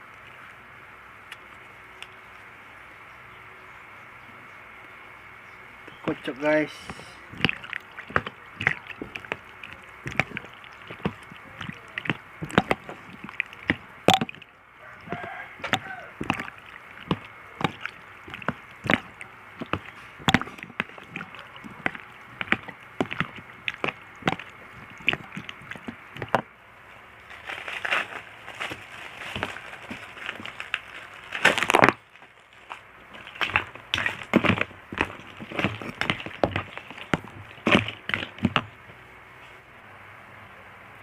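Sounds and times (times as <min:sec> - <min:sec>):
soup being stirred with clicks: 0:06.5 - 0:26.5, 0:28.8 - 0:32.0, 0:32.7 - 0:39.0.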